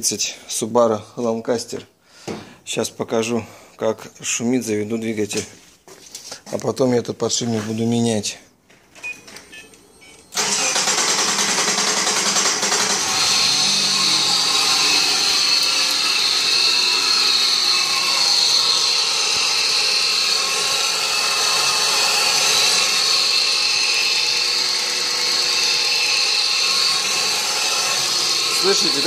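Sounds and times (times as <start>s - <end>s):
car engine running: 10.5s - 14.5s.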